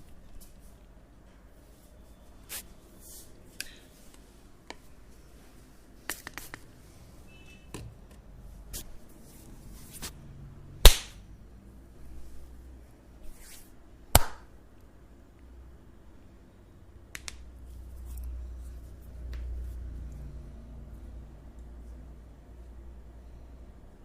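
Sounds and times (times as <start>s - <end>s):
sharp loud snap: 10.8s - 11.2s, 14.1s - 14.5s.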